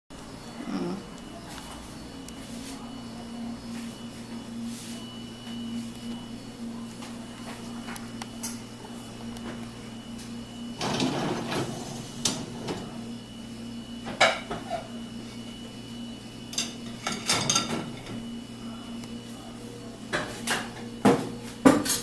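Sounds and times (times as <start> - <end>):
steady low hum: 0.1 - 22.0
dishes and cutlery clinking: 16.6 - 18.0.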